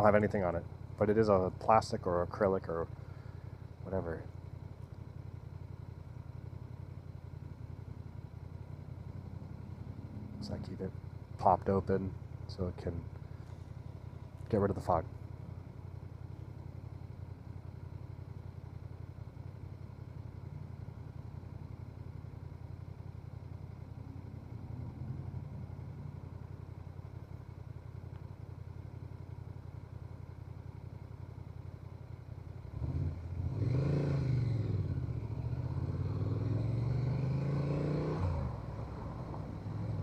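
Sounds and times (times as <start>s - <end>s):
motorcycle engine revving: 0.0s - 40.0s.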